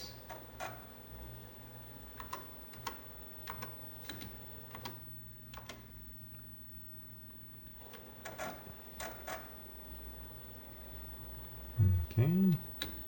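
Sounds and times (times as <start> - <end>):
steady low hum: 11.6 - 12.8.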